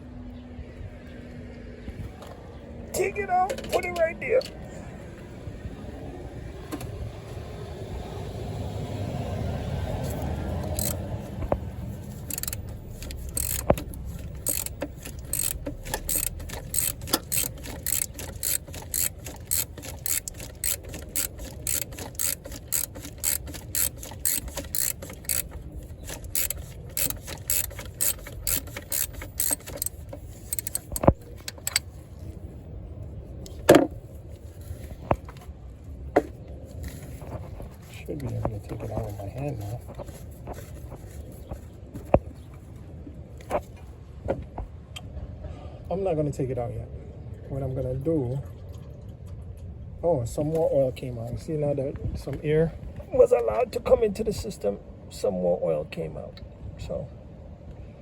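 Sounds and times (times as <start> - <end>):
ratchet wrench clicking: 10.0 - 31.9.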